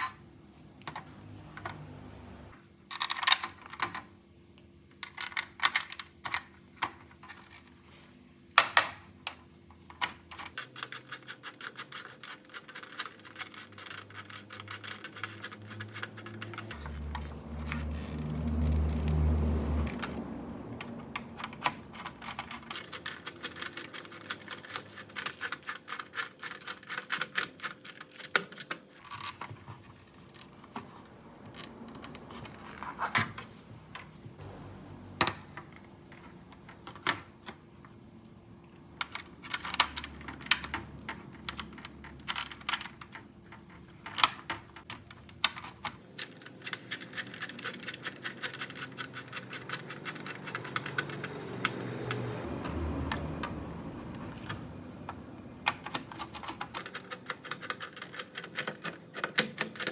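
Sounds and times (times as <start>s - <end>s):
rapid light clicks and scratching: 9.8s - 34.6s, 39.0s - 52.5s, 55.7s - 59.9s.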